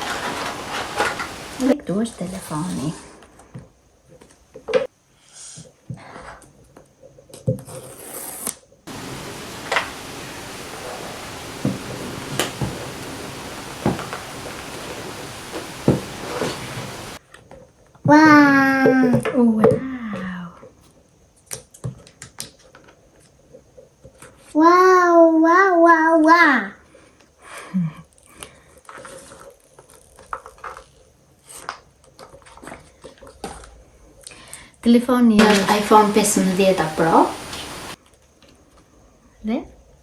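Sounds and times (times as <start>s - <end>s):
steady hiss: 0.0s - 1.8s, 8.9s - 17.2s, 35.4s - 38.0s.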